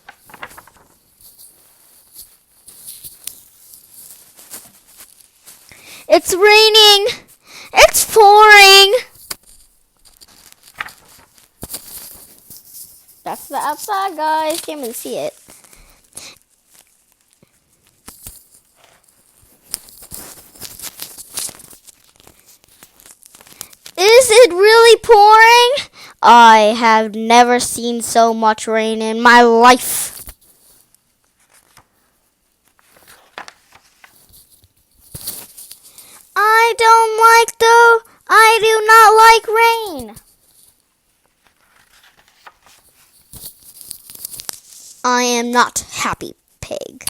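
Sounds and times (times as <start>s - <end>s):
book pages turning: 0.0s - 1.9s, 9.3s - 15.8s, 16.7s - 24.0s, 31.2s - 35.8s, 41.2s - 45.0s.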